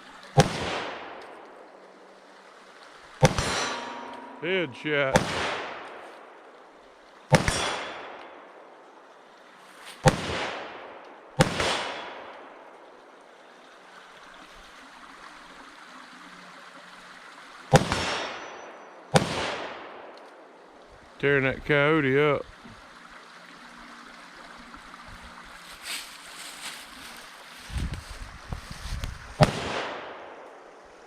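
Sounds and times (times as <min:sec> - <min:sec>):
gunshots with echo: 0:03.2 - 0:06.1, 0:07.3 - 0:08.2, 0:11.4 - 0:12.3, 0:17.8 - 0:18.5, 0:29.4 - 0:30.4.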